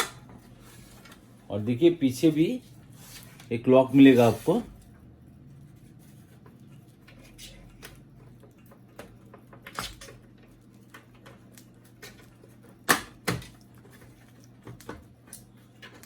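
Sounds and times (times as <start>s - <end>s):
sharp plastic snaps: 0.0s - 0.3s, 12.8s - 13.6s.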